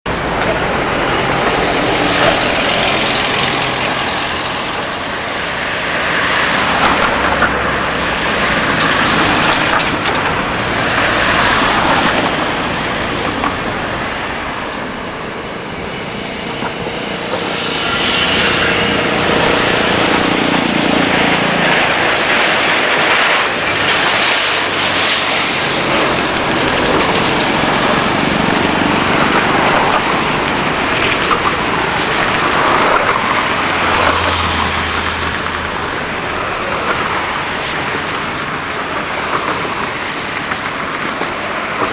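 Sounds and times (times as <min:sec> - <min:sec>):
vehicle noise: 0:00.0 - 0:41.9
motorcycle engines running: 0:00.1 - 0:07.1, 0:14.8 - 0:33.8.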